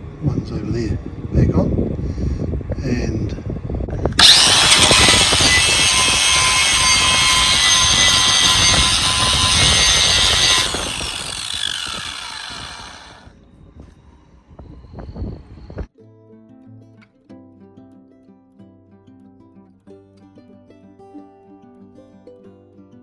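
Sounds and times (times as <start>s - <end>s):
power tool whining: 4.1s - 13.3s.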